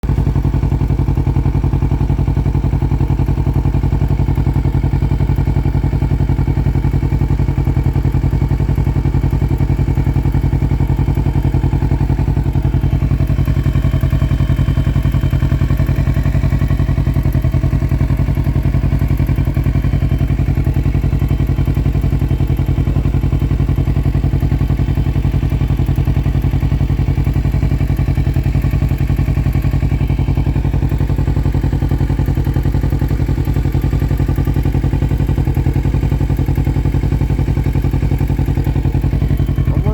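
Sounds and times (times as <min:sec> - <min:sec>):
motorcycle engine running: 0:00.0 - 0:39.9
unusual engine noise: 0:00.0 - 0:39.9.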